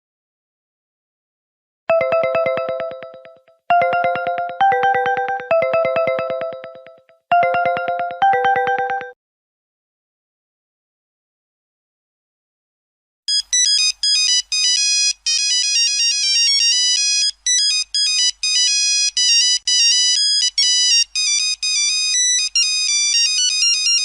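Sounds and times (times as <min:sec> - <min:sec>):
mobile phone ringtone beeping: 0:01.9 - 0:09.2, 0:13.3 - 0:24.0.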